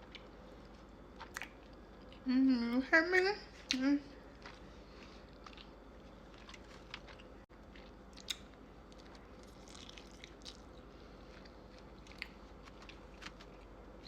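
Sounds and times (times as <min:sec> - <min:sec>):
person chewing food: 0:04.2 - 0:14.0.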